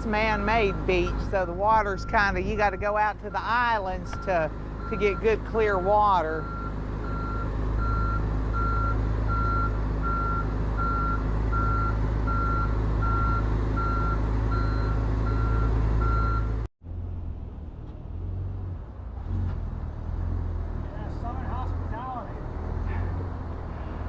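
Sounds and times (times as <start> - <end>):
truck engine running: 0.0 - 24.0
truck reverse alarm beeping: 0.1 - 16.7.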